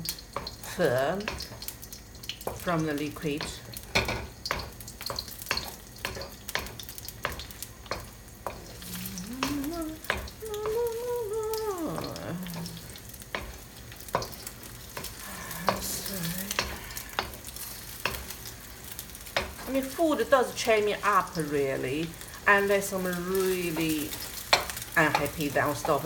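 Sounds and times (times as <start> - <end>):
eggs sizzling in a pan: 0.0 - 26.0
person humming a tune: 8.8 - 13.0, 15.2 - 17.2.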